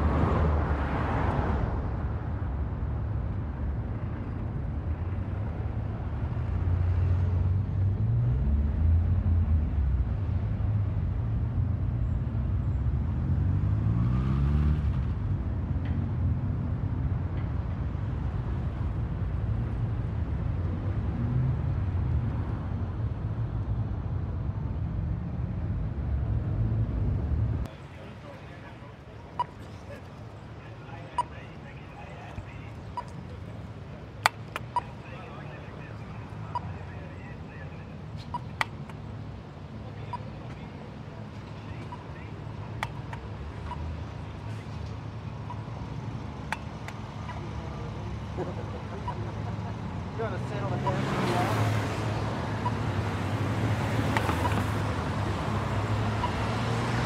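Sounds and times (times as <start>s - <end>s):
traffic engines rumbling: 0.0s - 57.0s
vehicle accelerating: 12.9s - 16.7s, 41.0s - 57.0s.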